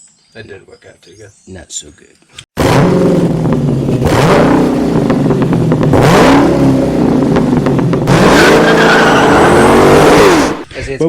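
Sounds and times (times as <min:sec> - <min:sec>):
engine revving: 0:02.6 - 0:10.7.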